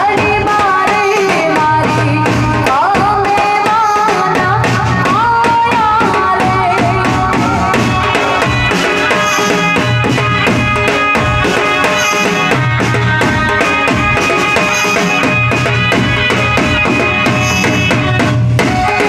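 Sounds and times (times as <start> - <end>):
drums and tabla beat: 0.0 - 19.0.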